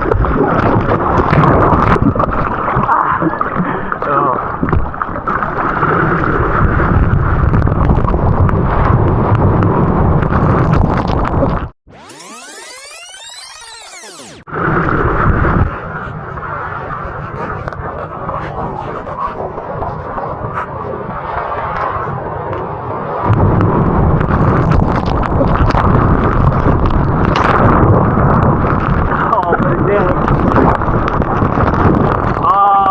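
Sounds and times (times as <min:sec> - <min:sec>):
crackling splashes: 0:00.0 - 0:32.9
wind buffeting microphone: 0:05.8 - 0:11.7, 0:14.5 - 0:32.9.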